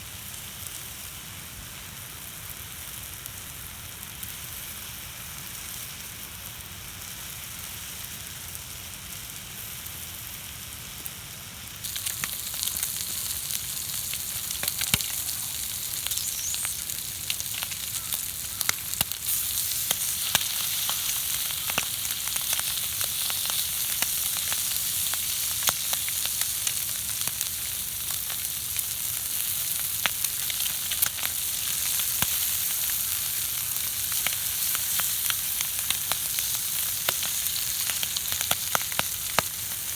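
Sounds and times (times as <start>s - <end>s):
food sizzling in a pan: 0.0s - 39.9s
fire pops and crackles: 11.0s - 39.9s.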